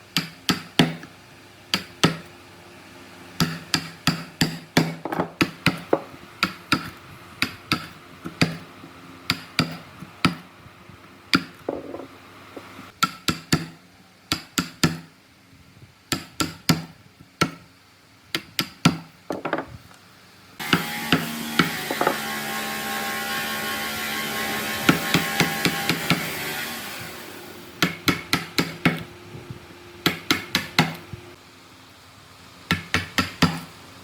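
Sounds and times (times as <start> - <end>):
tool knocks on wood: 3.4 - 6.1, 18.9 - 19.8, 21.6 - 22.2.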